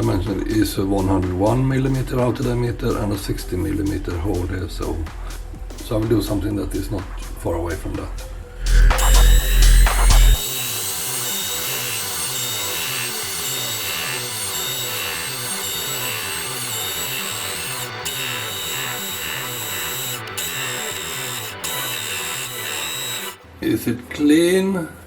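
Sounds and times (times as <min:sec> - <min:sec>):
metal lathe whining: 0:08.7 - 0:23.4.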